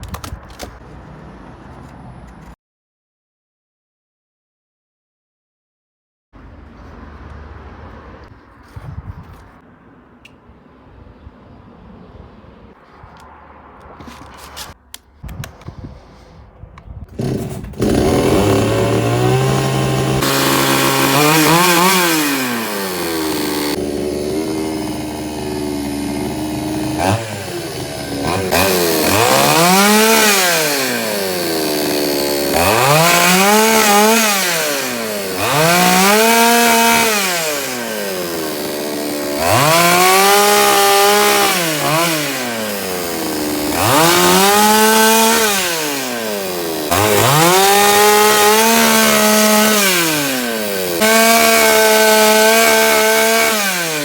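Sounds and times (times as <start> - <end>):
chainsaw engine revving: 17.2 - 54.0.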